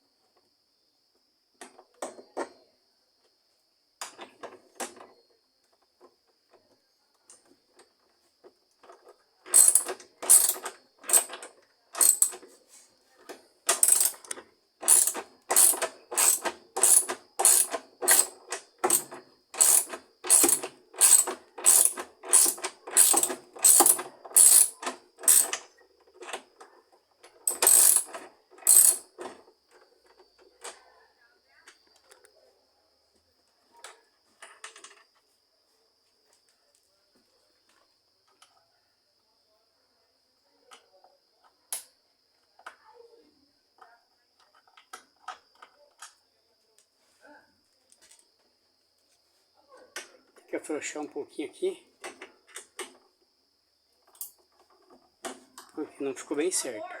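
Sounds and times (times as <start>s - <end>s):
ratchet wrench clicking: 9.5s - 11.3s, 12.0s - 12.4s, 13.7s - 25.6s, 27.5s - 29.1s.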